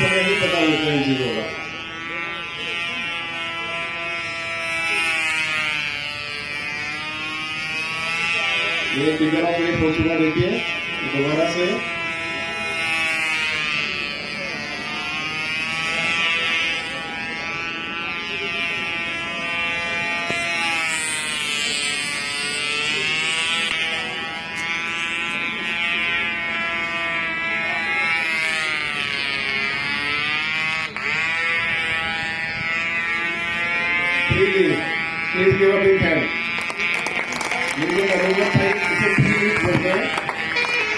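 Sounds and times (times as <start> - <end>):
model airplane engine buzzing: 0.0 - 40.9.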